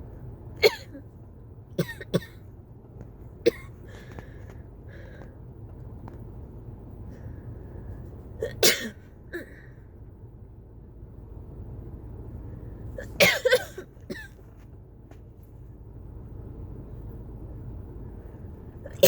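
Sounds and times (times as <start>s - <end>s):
person coughing: 0.6s - 1.0s, 3.5s - 3.8s, 8.4s - 9.7s, 13.0s - 14.4s.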